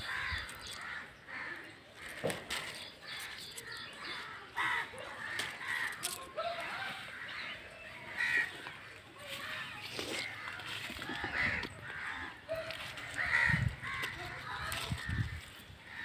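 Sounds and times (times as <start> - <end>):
crows cawing: 0.0 - 16.0.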